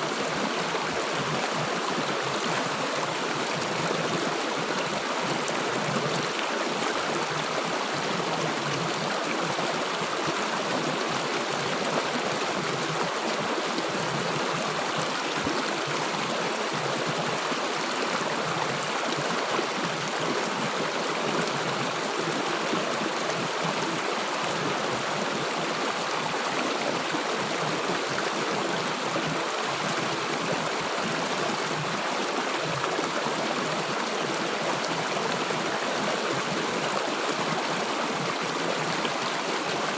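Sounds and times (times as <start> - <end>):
river water flowing over rocks: 0.0 - 39.9.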